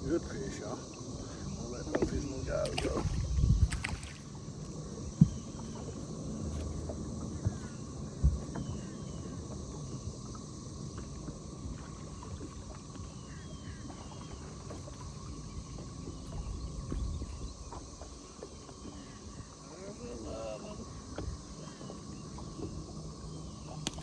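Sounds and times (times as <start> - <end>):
boat engine rumble: 0.0 - 24.0
faint steady whine: 0.0 - 24.0
knocks against boat: 1.9 - 4.2, 5.1 - 5.9.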